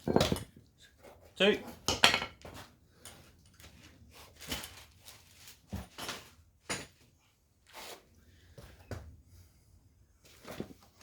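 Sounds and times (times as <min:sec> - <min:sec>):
metal tools clinking and knocking: 0:00.0 - 0:00.6.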